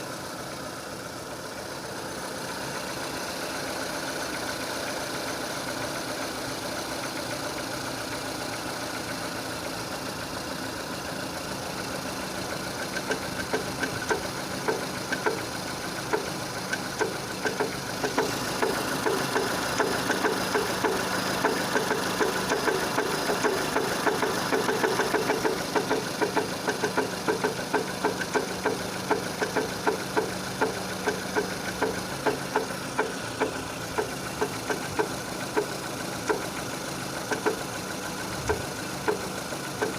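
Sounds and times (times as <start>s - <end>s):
car engine idling: 0.0s - 39.9s
sharp regular engine knock: 11.8s - 39.9s.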